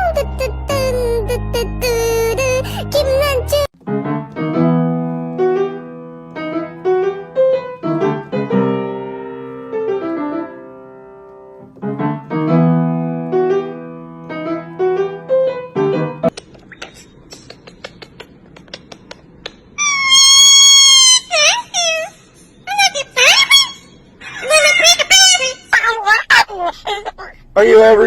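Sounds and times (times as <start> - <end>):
piano notes and chords: 0.0 - 16.4.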